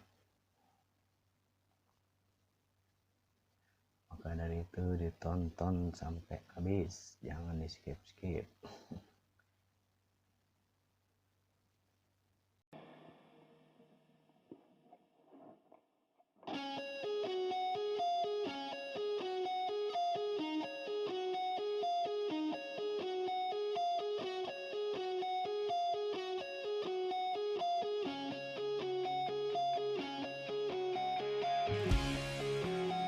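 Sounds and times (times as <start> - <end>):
faint small sounds: 0.0 - 4.6
plucked guitar riff with beat: 16.4 - 33.0.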